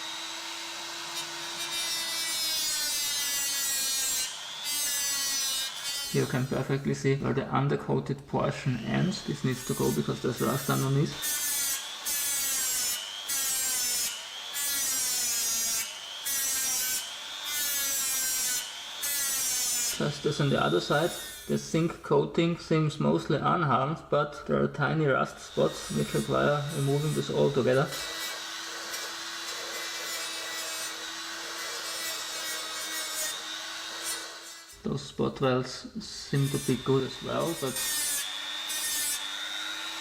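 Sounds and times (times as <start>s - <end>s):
grinder motor whine: 0.0s - 1.7s
grinder scrubbing metal: 0.0s - 6.9s, 8.8s - 21.8s, 25.4s - 34.8s, 36.3s - 40.0s.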